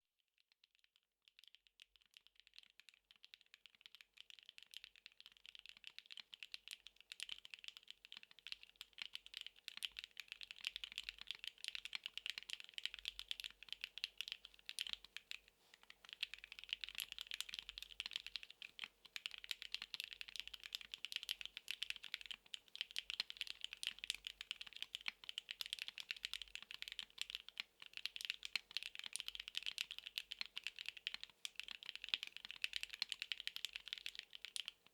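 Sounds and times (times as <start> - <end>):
mechanical keyboard typing: 16.1 - 34.8.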